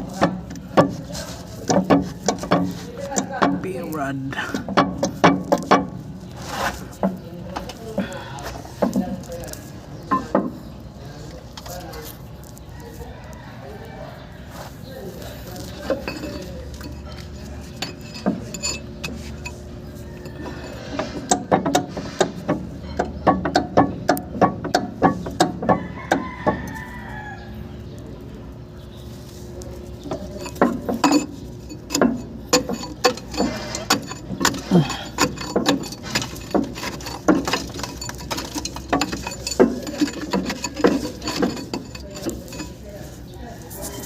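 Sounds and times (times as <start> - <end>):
metallic knocking and clunking: 0.0 - 6.1, 10.0 - 10.7, 15.8 - 26.7, 30.0 - 43.0.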